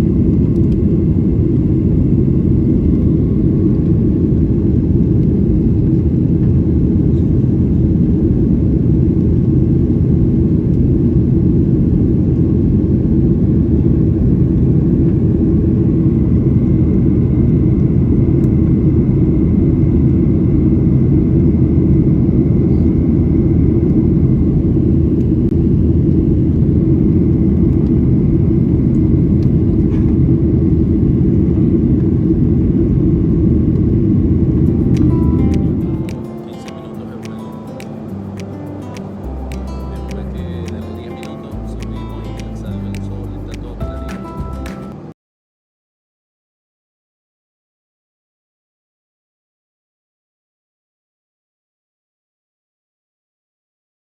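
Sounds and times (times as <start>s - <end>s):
jet engine and airflow rumble: 0.0s - 45.2s
faint thin whine: 15.8s - 38.7s.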